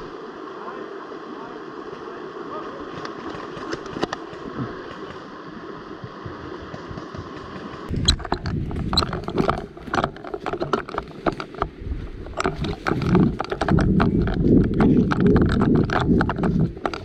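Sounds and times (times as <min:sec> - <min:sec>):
steady hiss: 0:00.0 - 0:13.8.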